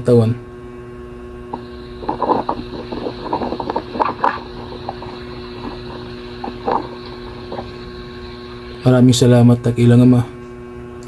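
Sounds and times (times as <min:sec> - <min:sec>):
electrical mains hum: 0:00.0 - 0:11.0
faint soft sounds: 0:01.5 - 0:09.1.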